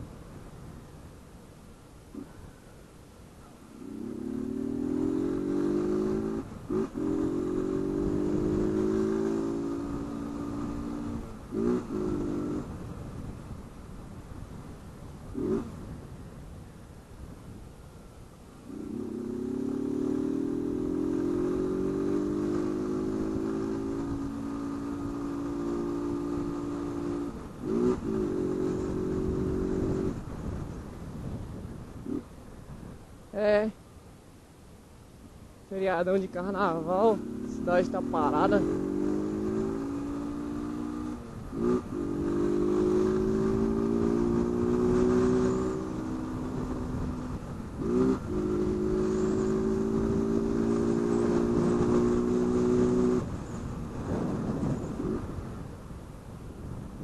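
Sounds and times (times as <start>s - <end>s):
motorcycle engine revving: 3.8s - 13.3s, 15.3s - 15.9s, 18.7s - 32.3s, 35.9s - 55.8s.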